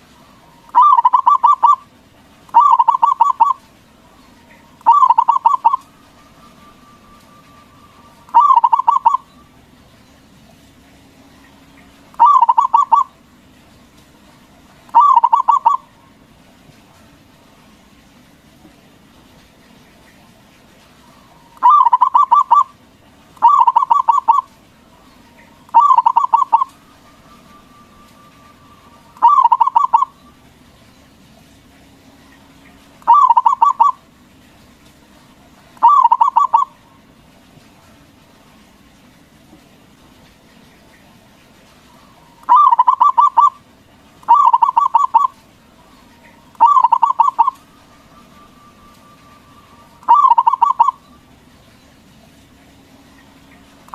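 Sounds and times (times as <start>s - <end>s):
dove cooing: 0.4s - 1.9s, 2.5s - 9.5s, 12.1s - 13.2s, 14.8s - 16.3s, 21.0s - 22.8s, 23.4s - 30.3s, 33.0s - 34.1s, 35.8s - 37.1s, 41.8s - 51.3s.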